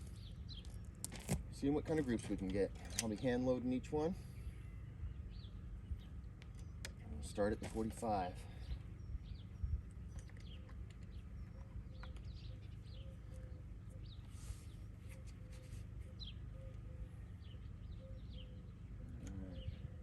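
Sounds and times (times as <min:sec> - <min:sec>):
steady low rumble: 0:00.0 - 0:15.1, 0:16.0 - 0:20.0
small birds chirping: 0:00.0 - 0:20.0.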